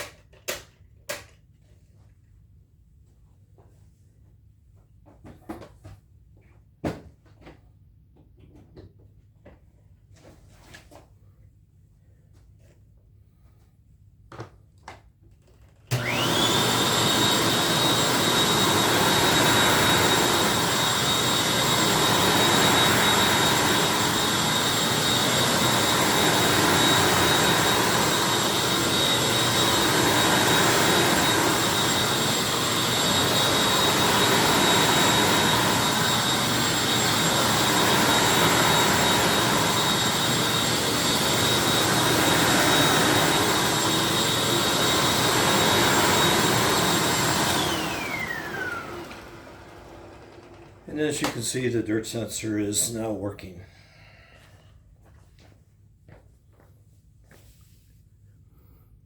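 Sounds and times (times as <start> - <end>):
upright vacuum cleaner running: 15.9 - 51.8.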